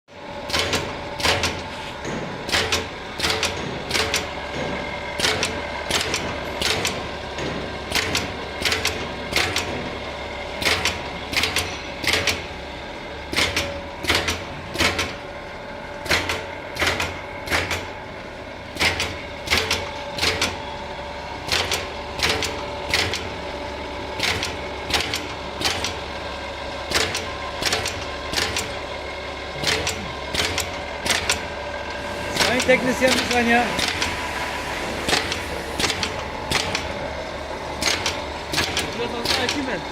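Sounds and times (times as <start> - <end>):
machine humming: 0.1 - 39.9
sharp mechanical clacks: 0.4 - 10.0, 10.6 - 12.6, 13.3 - 15.2, 16.0 - 17.9, 18.7 - 20.6, 21.4 - 23.4, 24.2 - 26.0, 26.9 - 28.8, 29.6 - 31.6, 32.3 - 34.2, 35.1 - 37.0, 37.8 - 39.8.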